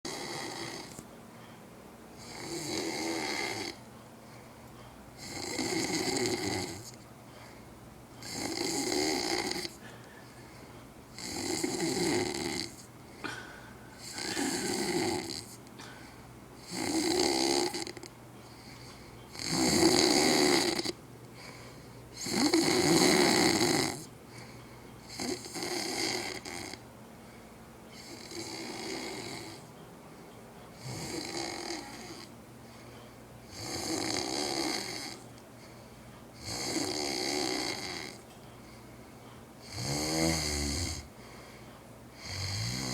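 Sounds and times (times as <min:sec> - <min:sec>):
man snoring: 0:00.1 - 0:01.0, 0:02.2 - 0:03.8, 0:05.2 - 0:06.9, 0:08.2 - 0:09.8, 0:11.2 - 0:13.4, 0:14.0 - 0:15.6, 0:16.6 - 0:18.0, 0:19.3 - 0:21.0, 0:22.2 - 0:24.1, 0:25.1 - 0:26.8, 0:28.0 - 0:29.6, 0:30.8 - 0:32.3, 0:33.5 - 0:35.2, 0:36.4 - 0:38.2, 0:39.6 - 0:41.1, 0:42.2 - 0:42.9.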